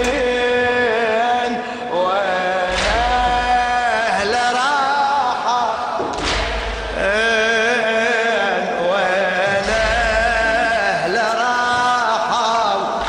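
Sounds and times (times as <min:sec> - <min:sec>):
deep thumps: 0:02.4 - 0:04.7, 0:05.9 - 0:07.5, 0:09.4 - 0:13.0.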